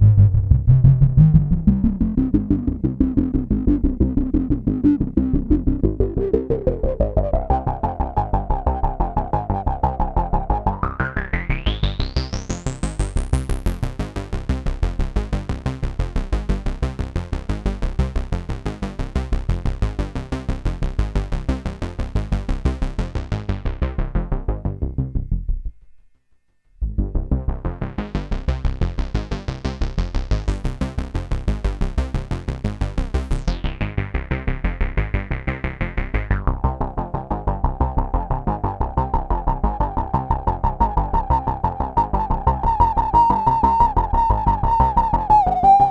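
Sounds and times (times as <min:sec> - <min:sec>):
synthesizer repeating sequence: 0:38.8 - 0:45.9.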